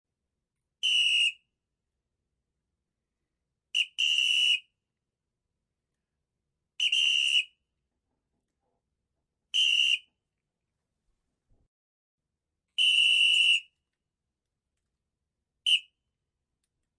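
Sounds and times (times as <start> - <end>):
shrill whistle blasts: 0.8 - 1.6, 3.7 - 4.8, 6.8 - 7.7, 9.5 - 10.2, 12.7 - 13.8, 15.6 - 16.0.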